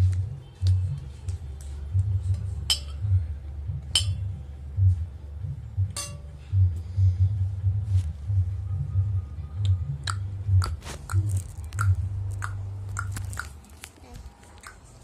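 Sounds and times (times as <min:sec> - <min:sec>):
spoon clinking against a dish: 0:02.7 - 0:03.0, 0:04.0 - 0:04.2, 0:06.0 - 0:06.3
muffled thumps while eating: 0:04.8 - 0:14.8.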